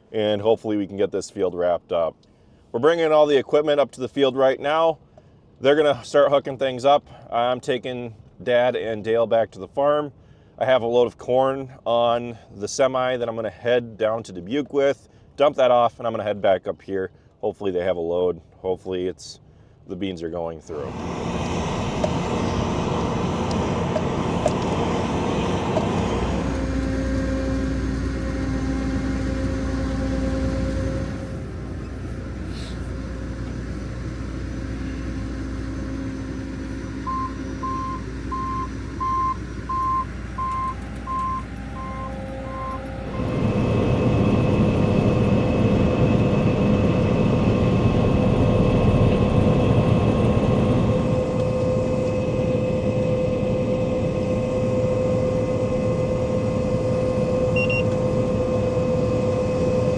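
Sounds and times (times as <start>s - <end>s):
heavy machinery engine running: 20.7s - 59.9s
machine running with a whine: 20.7s - 59.9s
backup alarm beeping: 33.2s - 43.5s, 57.5s - 58.0s.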